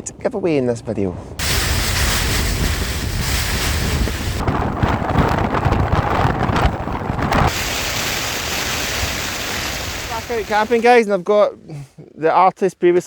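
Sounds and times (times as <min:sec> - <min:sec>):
wind gusts on microphone: 0:00.0 - 0:11.0
rain: 0:01.4 - 0:04.4, 0:07.3 - 0:11.0.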